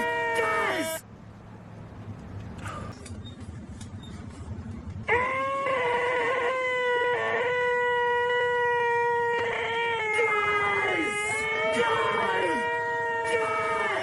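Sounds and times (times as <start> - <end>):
man screaming nasal eeeeh: 5.1 - 14.0.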